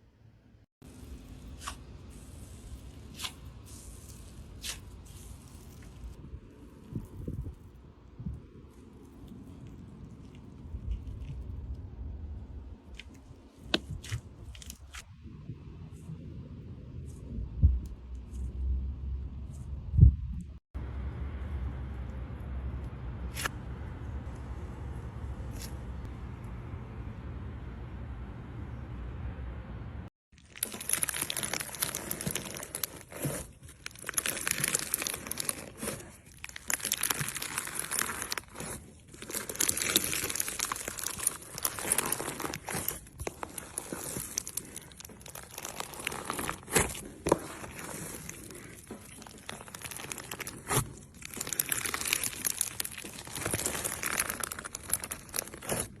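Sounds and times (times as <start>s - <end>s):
crunchy slime crackling: 0.8s - 15.1s, 30.3s - 56.0s
steady low hum: 15.1s - 30.1s.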